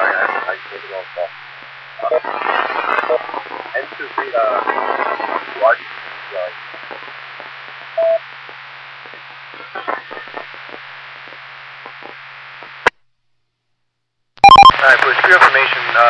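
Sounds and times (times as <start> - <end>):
radio receiver hiss: 0.0 - 12.9, 14.4 - 16.0
faint broken radio transmissions: 0.0 - 13.0, 14.4 - 16.0
short beep: 14.4 - 14.8.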